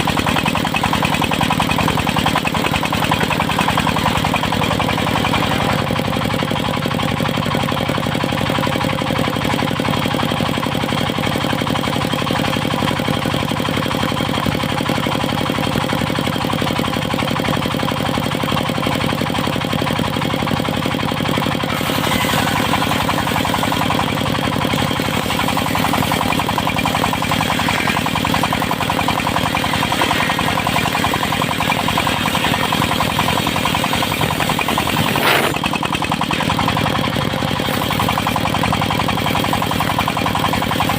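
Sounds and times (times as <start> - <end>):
sawmill engine running: 0.0 - 40.9.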